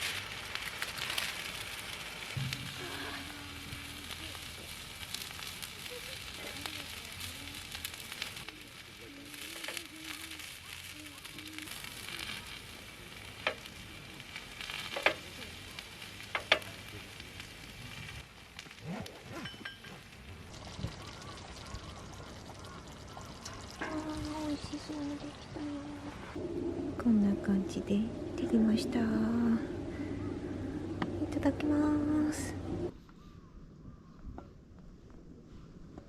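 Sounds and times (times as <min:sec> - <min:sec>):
food sizzling in a pan: 0:00.0 - 0:18.8, 0:19.8 - 0:26.0.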